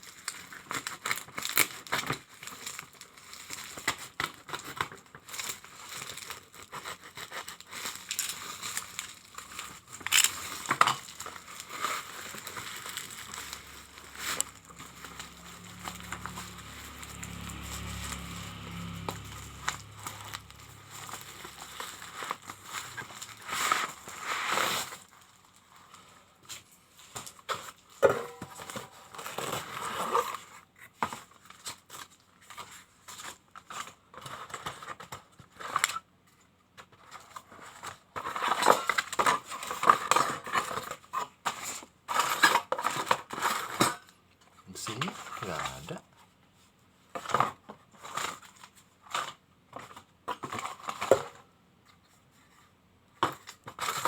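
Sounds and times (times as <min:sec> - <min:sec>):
plastic packaging crinkling: 0:00.0 - 0:26.0
low hum: 0:13.4 - 0:22.8.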